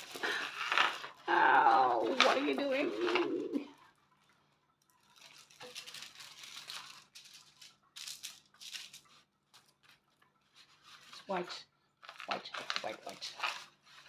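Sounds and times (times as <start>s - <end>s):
plastic bag crinkling: 0.0s - 14.0s
small beads rattling: 5.0s - 9.3s.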